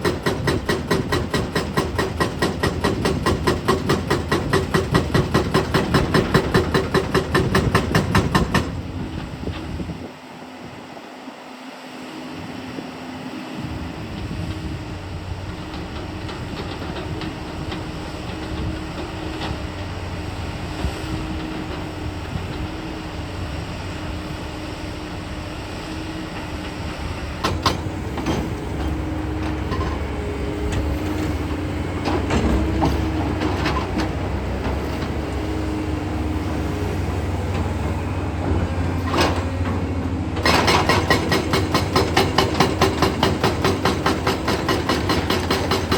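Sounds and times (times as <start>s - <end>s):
hydraulic breaker hammering: 0.0s - 9.0s, 27.4s - 35.2s, 39.0s - 45.9s
excavator engine running: 0.0s - 11.2s, 12.2s - 45.9s.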